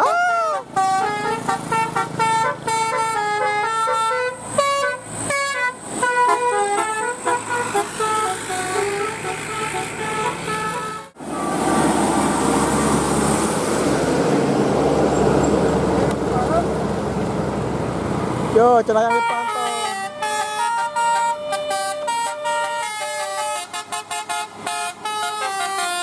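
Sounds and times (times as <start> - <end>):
bus musical horn tune: 0.0 - 11.7, 19.0 - 26.0
vehicle noise rushing: 0.0 - 26.0.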